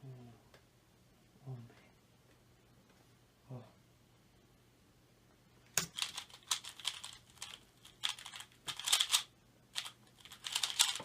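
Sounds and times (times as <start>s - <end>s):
speedcube plastic clicking turns: 5.8s - 11.0s.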